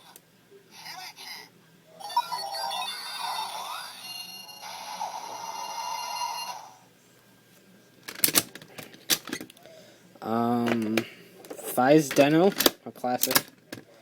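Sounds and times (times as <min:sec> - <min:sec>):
electronic music from toy speaker: 0:02.0 - 0:06.8.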